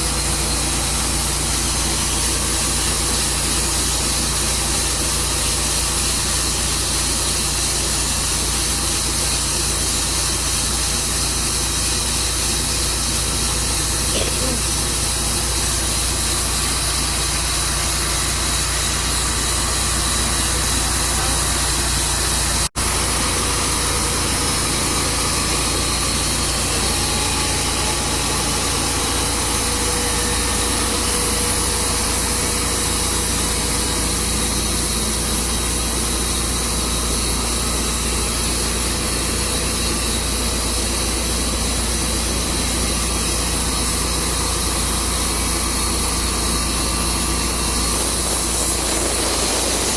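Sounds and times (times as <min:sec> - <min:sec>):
sawmill engine droning: 0:00.0 - 0:49.9.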